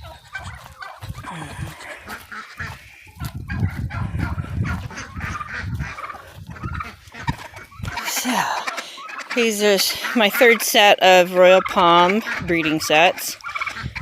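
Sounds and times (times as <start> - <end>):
waterfowl honking: 0.0 - 14.0.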